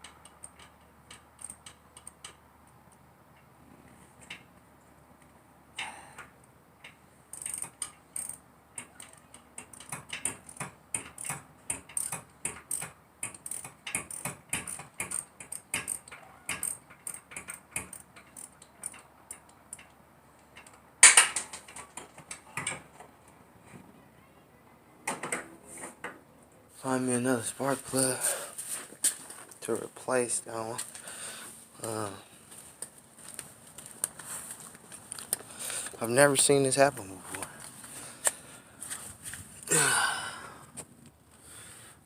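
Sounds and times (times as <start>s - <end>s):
ratchet wrench clicking: 0.0s - 2.4s, 7.3s - 19.9s.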